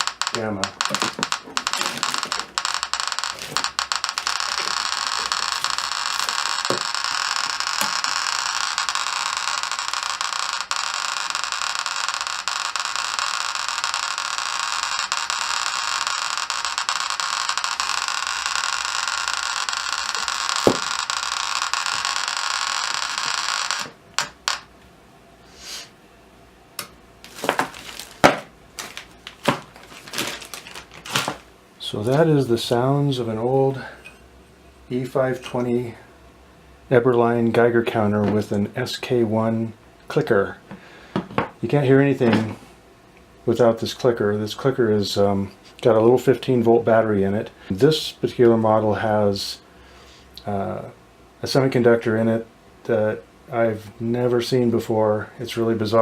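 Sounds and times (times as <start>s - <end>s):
geiger counter clicking rapidly: 0.0s - 24.7s.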